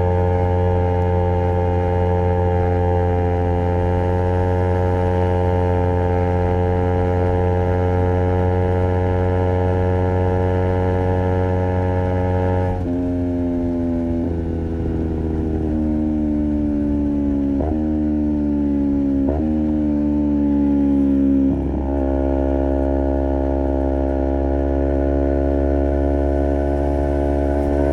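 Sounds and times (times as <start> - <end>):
motorcycle engine at high revs: 0.0 - 27.9.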